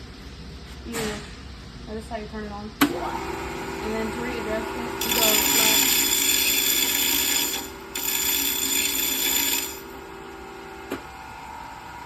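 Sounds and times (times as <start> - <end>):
grinder motor hum: 2.9 - 12.0
grinding wheel being dressed: 5.0 - 10.0.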